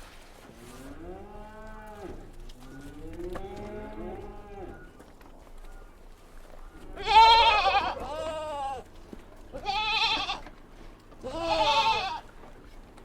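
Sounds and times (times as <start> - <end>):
goat bleating: 6.9 - 10.5, 11.2 - 12.3.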